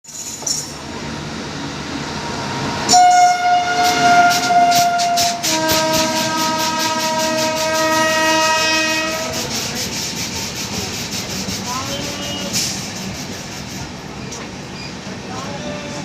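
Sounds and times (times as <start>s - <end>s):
train wheels clattering on rails: 2.8s - 8.6s, 9.2s - 16.0s
train horn blast: 2.9s - 9.6s, 11.9s - 12.8s.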